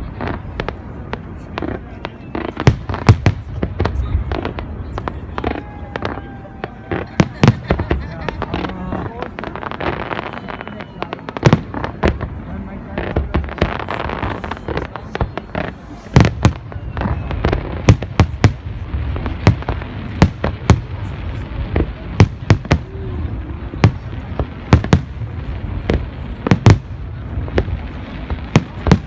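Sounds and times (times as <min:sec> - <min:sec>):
low rumble of distant bursts: 0:00.0 - 0:29.0
sharp firework bangs: 0:23.7 - 0:29.0.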